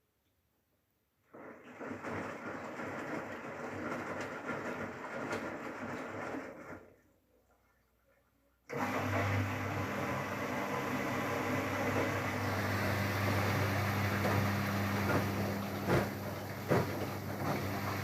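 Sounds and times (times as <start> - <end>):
washing machine running: 1.3 - 7.1, 8.7 - 18.0.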